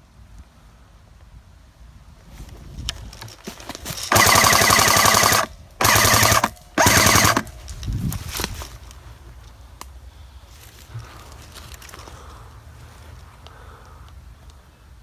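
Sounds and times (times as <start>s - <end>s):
airsoft gun automatic bursts: 4.1s - 7.5s.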